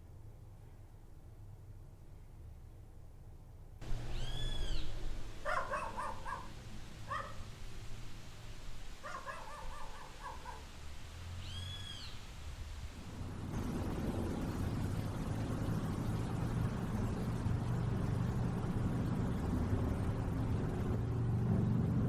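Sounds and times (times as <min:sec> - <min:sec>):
low background rumble: 0:00.0 - 0:22.0
whistle-like animal call: 0:04.1 - 0:04.9.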